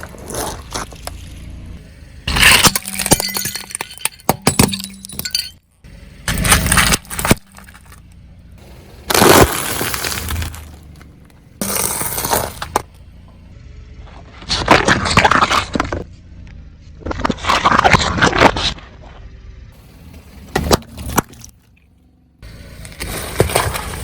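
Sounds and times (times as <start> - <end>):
tyres crushing brittle objects: 0.0 - 1.4, 2.2 - 5.6, 6.3 - 8.0, 8.6 - 12.9, 14.4 - 16.0, 17.0 - 18.9, 20.5 - 21.8, 22.8 - 24.0.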